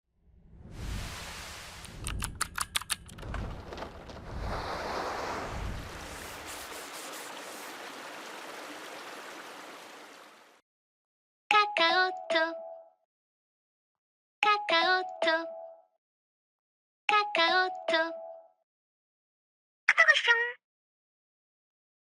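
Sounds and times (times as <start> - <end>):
sharp clicks: 1.9 - 3.2
steady rushing noise: 4.3 - 10.2.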